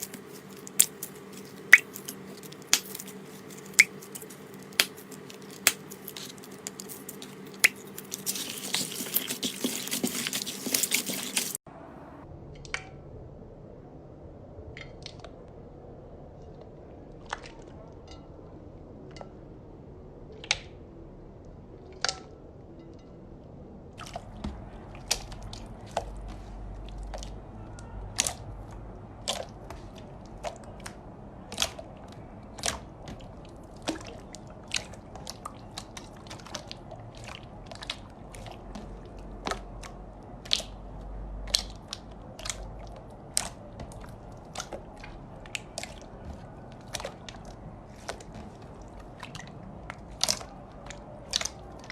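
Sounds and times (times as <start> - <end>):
slime squished crackling clicks: 0.0 - 11.6.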